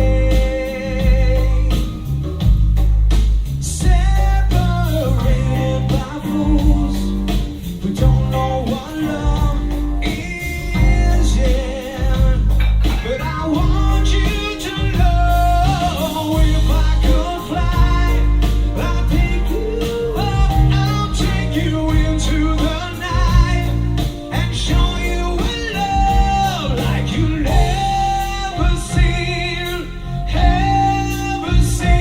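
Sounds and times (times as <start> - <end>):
song through speaker: 0.0 - 32.0.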